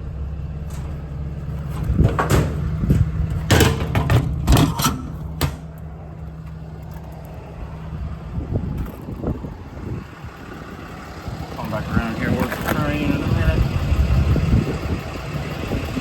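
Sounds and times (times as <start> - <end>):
diesel engine idling: 0.0 - 16.0
loud clanks and knocks: 0.7 - 6.0.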